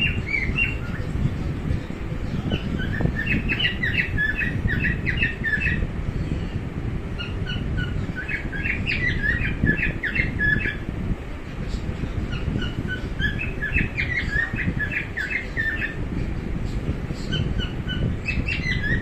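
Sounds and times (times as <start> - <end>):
low background rumble: 0.0 - 19.0
cockatiel chirping and squawking: 2.5 - 5.8, 7.2 - 10.8, 12.3 - 16.0, 17.3 - 19.0.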